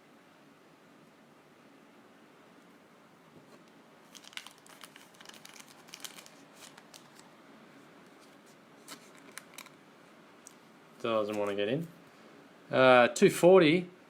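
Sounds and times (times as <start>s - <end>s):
plastic sleeve crinkling: 3.5s - 7.4s, 8.0s - 9.8s, 10.4s - 11.6s.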